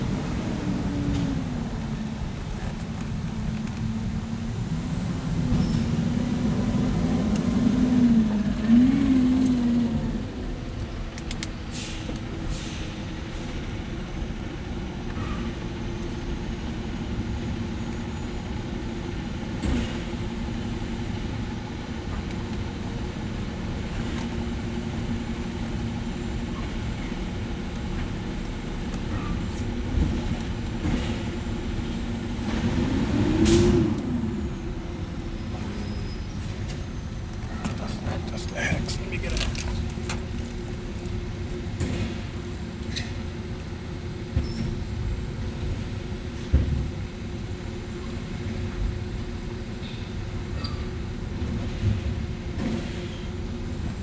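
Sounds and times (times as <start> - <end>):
car engine revving and idling: 0.0 - 12.4.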